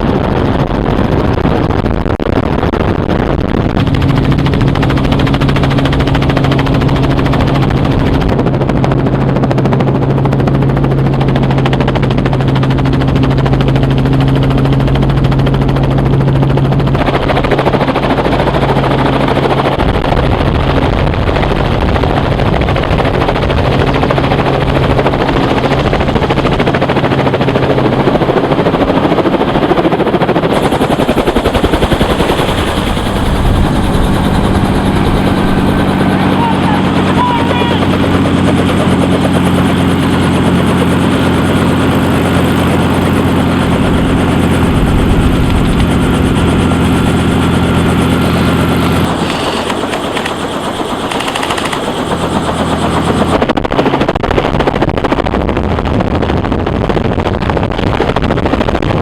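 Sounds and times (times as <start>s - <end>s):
rapid automatic gunfire: 16.8s - 52.5s.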